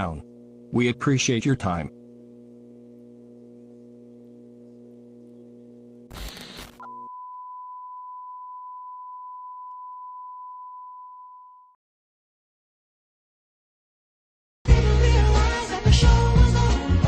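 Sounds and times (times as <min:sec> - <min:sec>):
pure broadcast tone: 0:00.0 - 0:11.7
electronic hum: 0:00.0 - 0:11.8
static burst: 0:06.1 - 0:06.8.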